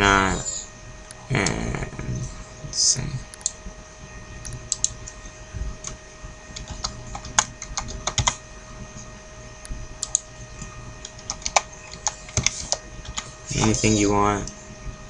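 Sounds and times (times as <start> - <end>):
faint steady hum: 0.0 - 15.0
keyboard typing: 4.4 - 5.2, 5.8 - 8.4, 10.0 - 14.1.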